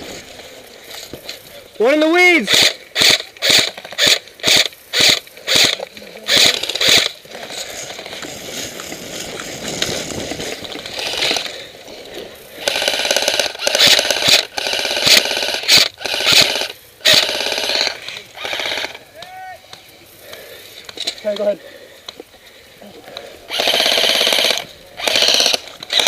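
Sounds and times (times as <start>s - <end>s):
rustling noise: 0.0s - 1.6s, 6.8s - 12.5s
airsoft rifle shots clacking: 2.3s - 7.2s, 12.6s - 19.0s, 23.6s - 26.0s.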